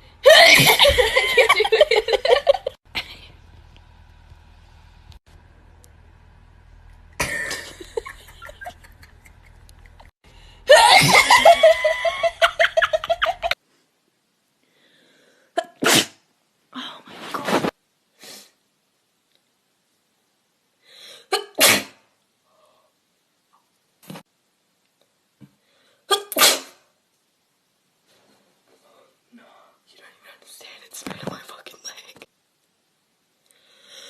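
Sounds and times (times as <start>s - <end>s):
people sneezing: 15.7s - 16.2s, 21.3s - 22.0s, 26.1s - 26.8s.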